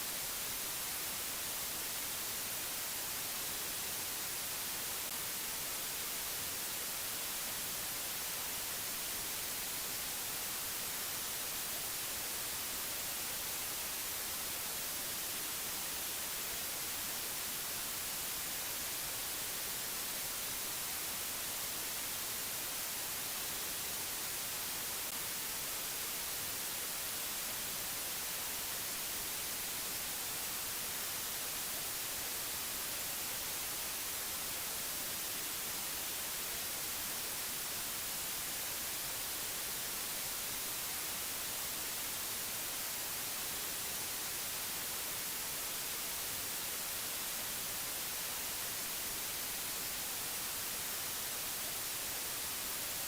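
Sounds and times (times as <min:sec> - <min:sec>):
white noise hiss: 0:00.0 - 0:53.0.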